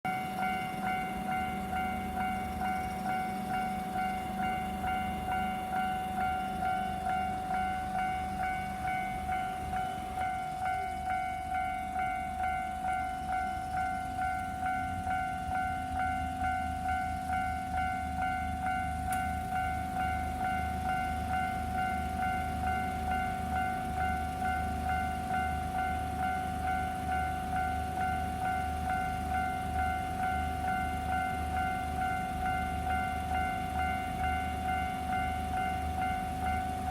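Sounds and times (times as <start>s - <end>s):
diesel train rumble: 0.0s - 36.9s
level crossing alarm bell: 0.1s - 36.9s.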